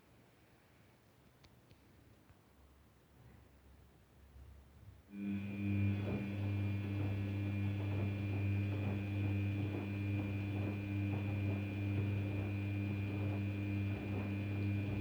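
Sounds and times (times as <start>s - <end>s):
washing machine hum and whine: 5.1s - 15.0s.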